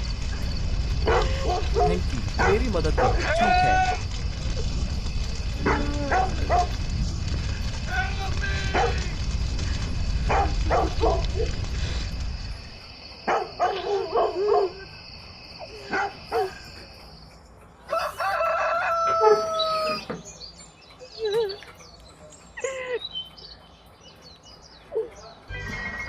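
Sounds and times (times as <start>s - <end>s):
rooster crowing: 17.9s - 20.1s.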